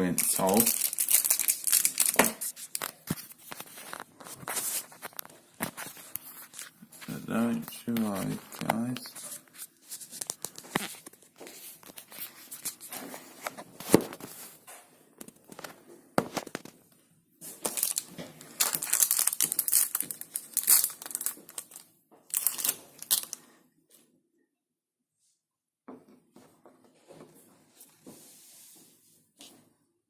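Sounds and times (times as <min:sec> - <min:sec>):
plastic wrapper crinkling and tearing: 0:00.0 - 0:07.2, 0:17.6 - 0:23.5.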